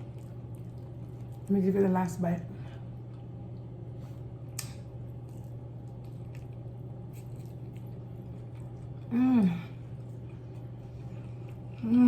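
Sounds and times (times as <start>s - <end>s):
chewing with wet mouth clicks: 0.0s - 1.5s, 4.4s - 9.1s, 9.8s - 11.8s
person humming mmm: 9.1s - 9.8s, 11.8s - 12.0s.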